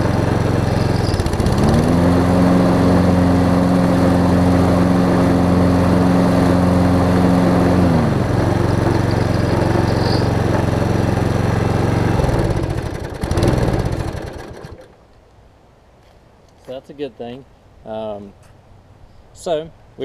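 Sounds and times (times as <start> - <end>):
lawn mower engine running: 0.0 - 15.0.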